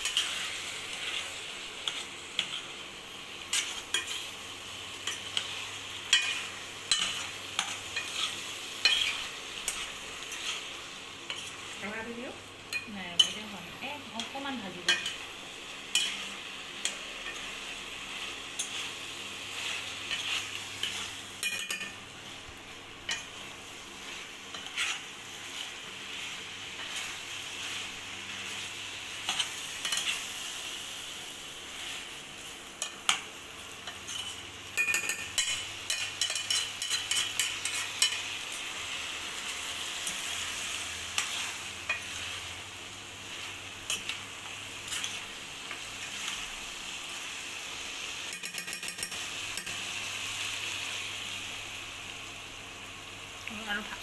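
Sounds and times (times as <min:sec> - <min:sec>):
chicken sizzling in a pan: 0:00.0 - 0:54.0
spatula scraping a pan: 0:03.5 - 0:04.3, 0:05.0 - 0:10.7, 0:24.0 - 0:27.9, 0:33.8 - 0:38.2.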